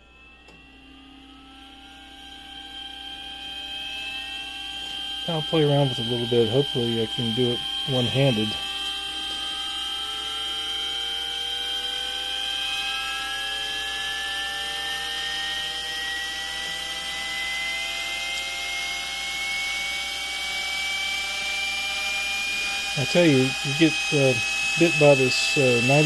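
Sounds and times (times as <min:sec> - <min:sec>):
gyro motor whining: 0:00.0 - 0:26.0
steady tones: 0:05.0 - 0:08.8, 0:22.3 - 0:26.0.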